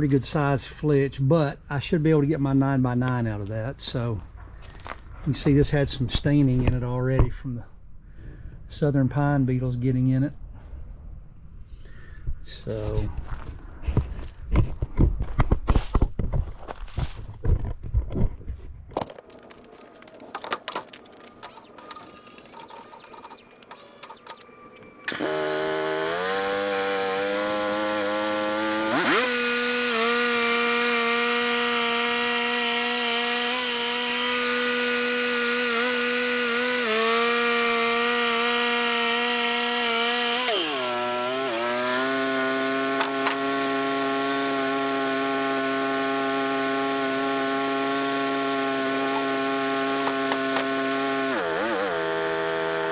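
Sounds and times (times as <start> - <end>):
handling sounds: 19.0 - 25.2
band blade cutting log: 19.0 - 52.9
sawmill engine running: 19.0 - 52.9.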